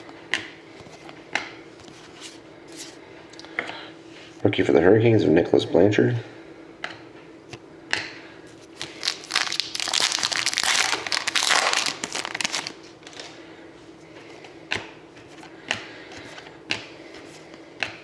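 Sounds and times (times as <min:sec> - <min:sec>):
foil wrapper crinkling and tearing: 0:08.8 - 0:13.3.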